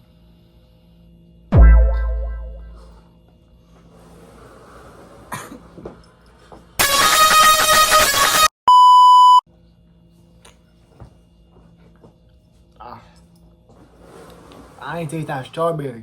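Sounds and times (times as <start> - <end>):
harsh blare of steady tones: 6.8 - 8.5
censor bleep: 8.7 - 9.4.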